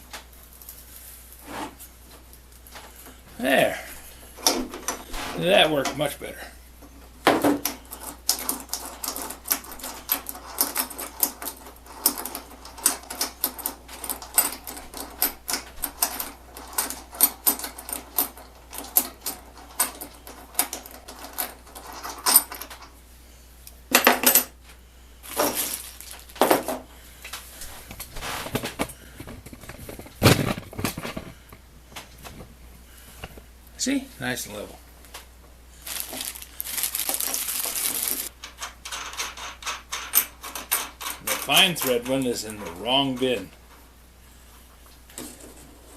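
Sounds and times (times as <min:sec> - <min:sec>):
metal tools clattering and knocking: 0:07.2 - 0:23.0, 0:23.9 - 0:24.6, 0:38.3 - 0:43.5.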